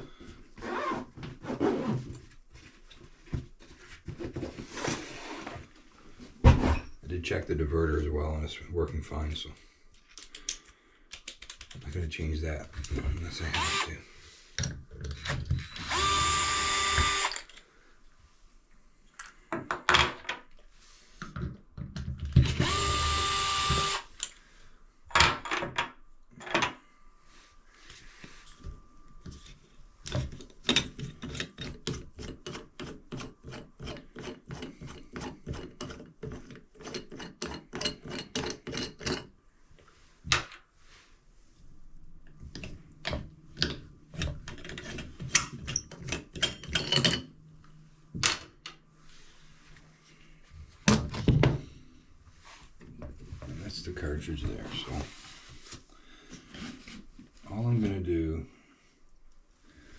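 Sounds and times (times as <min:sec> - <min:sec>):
cordless drill whining: 0:13.4 - 0:14.0, 0:15.6 - 0:17.5, 0:22.4 - 0:24.1.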